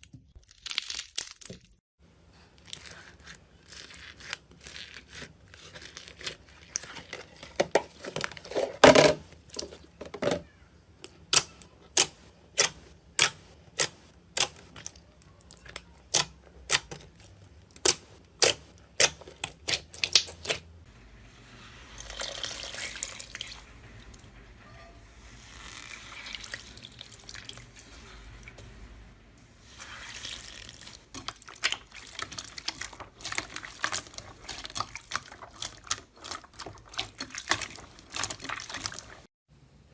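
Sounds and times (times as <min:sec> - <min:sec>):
slime wet squishing: 0:02.5 - 0:08.4, 0:11.0 - 0:20.7, 0:29.6 - 0:39.3.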